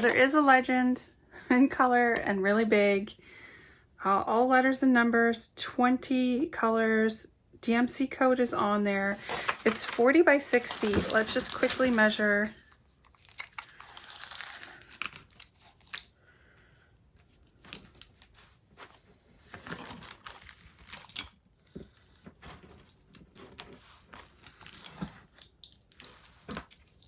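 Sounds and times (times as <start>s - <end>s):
plastic film crinkling: 9.2s - 16.1s, 17.5s - 27.0s.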